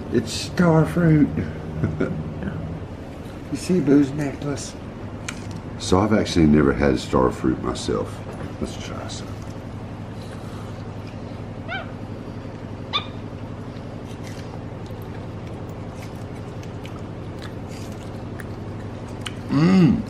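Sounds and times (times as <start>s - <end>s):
steady low hum: 0.0s - 20.0s
monkey squeaks: 12.9s - 13.2s.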